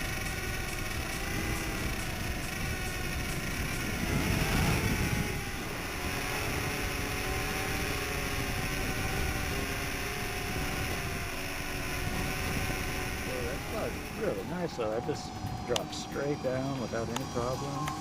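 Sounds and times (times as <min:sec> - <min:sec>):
drone motors whining: 0:00.0 - 0:18.0
low rumble: 0:12.0 - 0:18.0.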